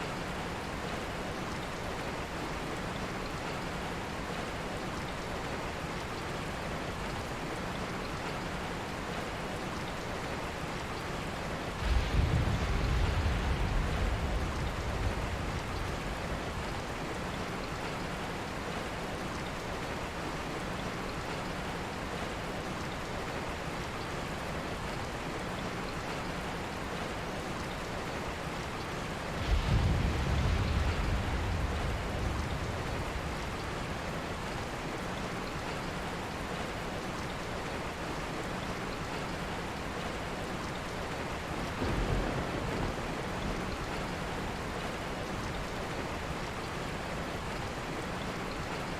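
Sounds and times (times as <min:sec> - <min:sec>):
steady rain: 0:00.0 - 0:48.9
low rumbles of thunder: 0:11.8 - 0:17.0, 0:29.3 - 0:34.5, 0:41.6 - 0:46.2.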